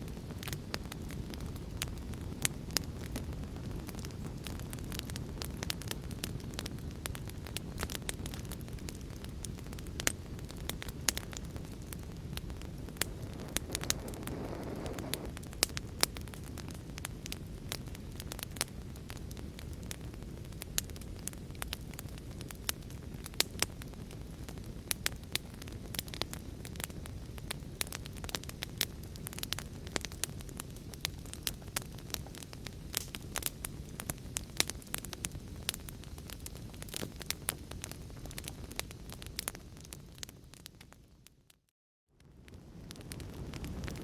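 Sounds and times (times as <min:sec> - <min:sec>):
wood fire burning: 0:00.0 - 0:41.6, 0:42.2 - 0:44.0
fire crackling and popping: 0:00.0 - 0:44.0
soft hiss: 0:13.0 - 0:15.4.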